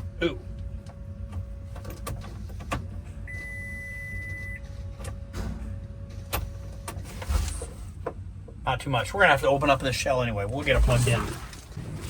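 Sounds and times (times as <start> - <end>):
electronic beep: 3.3 - 4.6.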